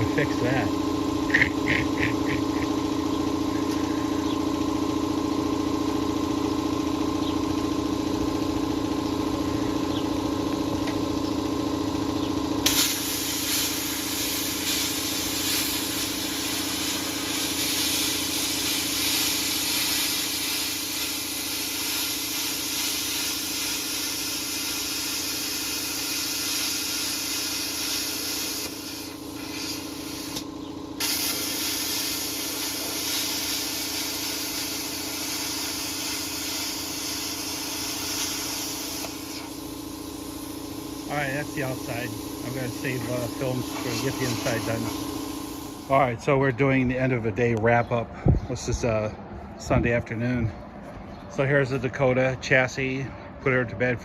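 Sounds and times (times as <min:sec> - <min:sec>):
plasma cutter hum: 0:00.0 - 0:04.3, 0:12.6 - 0:46.0
air hissing: 0:12.6 - 0:46.0.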